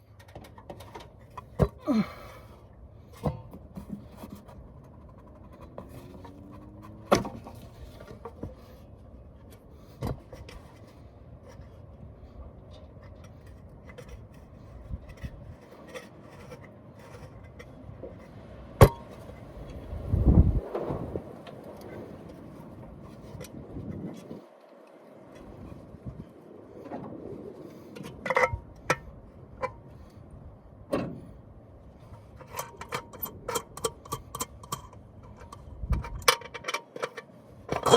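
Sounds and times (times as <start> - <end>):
rubbing and scraping: 3.0 - 24.5
tools clicking and knocking: 32.2 - 37.9.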